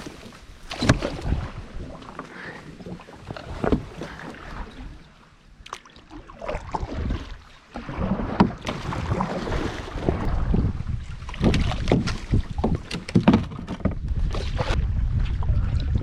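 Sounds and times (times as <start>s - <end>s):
wind on microphone: 0.0s - 2.0s, 6.5s - 16.0s
paddle strokes splashing: 0.0s - 14.8s.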